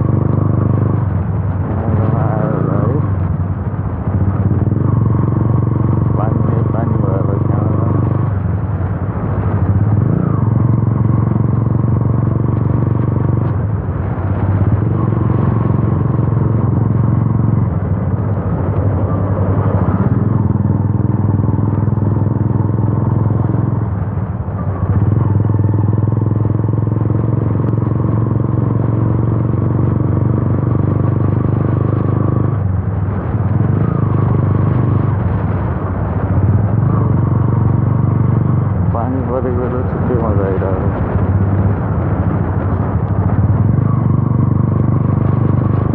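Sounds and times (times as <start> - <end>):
loud motorcycle engine: 0.0 - 45.9.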